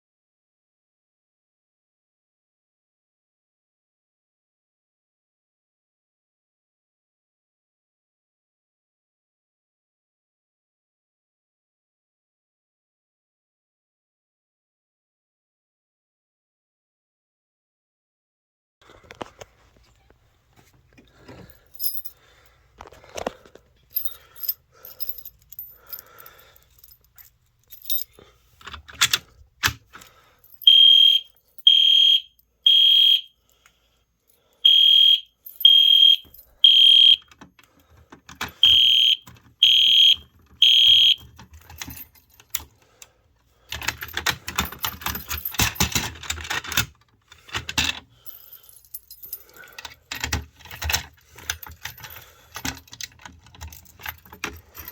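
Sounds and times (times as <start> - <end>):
high-pitched alarm beeps: 30.7 - 33.3, 34.7 - 37.3, 38.6 - 41.2.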